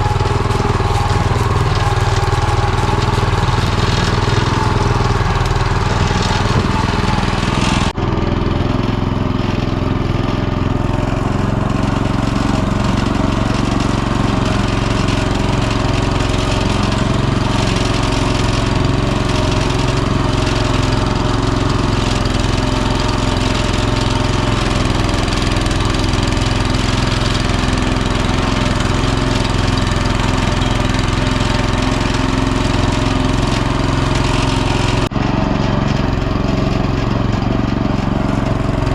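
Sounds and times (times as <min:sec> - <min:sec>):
small tractor engine running: 0:00.0 - 0:38.9.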